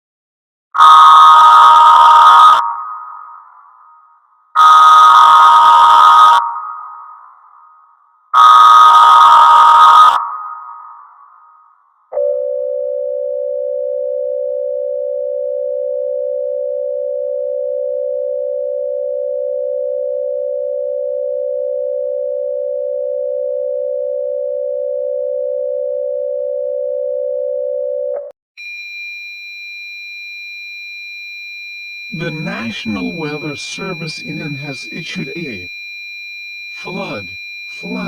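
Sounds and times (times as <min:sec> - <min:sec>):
high steady tone: 0:00.8 - 0:12.5, 0:28.6 - 0:38.0
two-tone alert signal: 0:32.1 - 0:35.7, 0:36.7 - 0:38.0.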